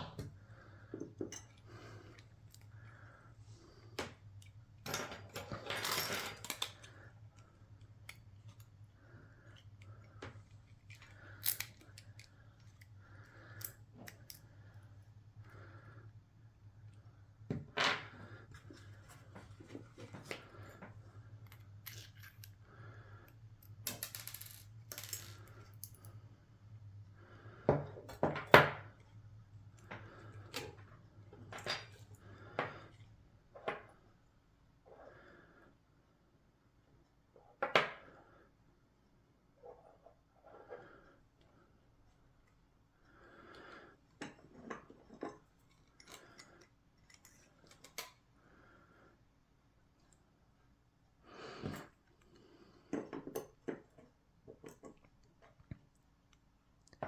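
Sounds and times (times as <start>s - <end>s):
small metal parts clicking: 9.5s - 14.4s.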